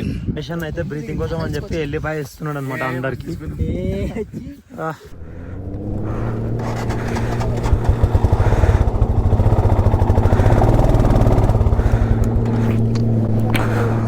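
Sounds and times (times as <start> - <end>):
motorcycle engine running: 5.1 - 14.0.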